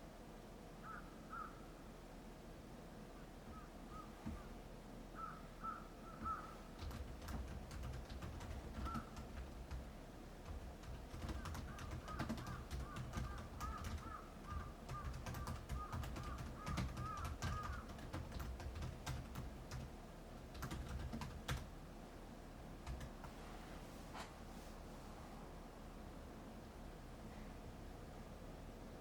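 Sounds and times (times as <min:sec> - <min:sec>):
soft bird call notes: 0:00.8 - 0:01.9, 0:03.1 - 0:06.8.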